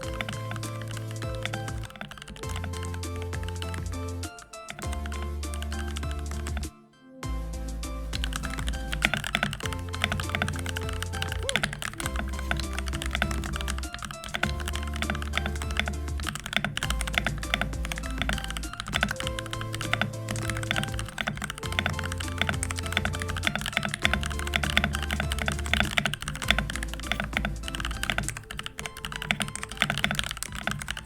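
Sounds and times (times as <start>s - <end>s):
typing on mechanical keyboard: 0.0s - 6.7s, 8.2s - 31.0s
background music with bass line: 0.0s - 31.0s.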